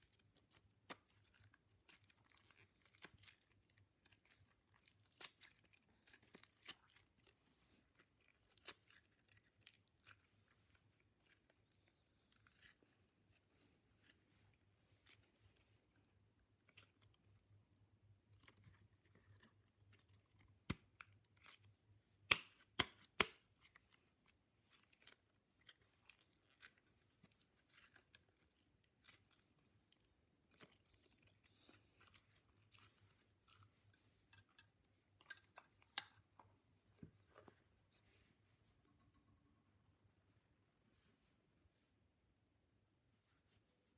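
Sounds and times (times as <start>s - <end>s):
sharp slime pops: 22.3s - 23.4s.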